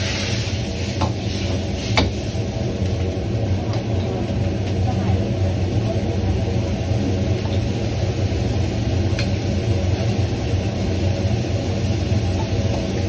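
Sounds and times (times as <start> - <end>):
gas wok range and exhaust hood drone: 0.0 - 13.0.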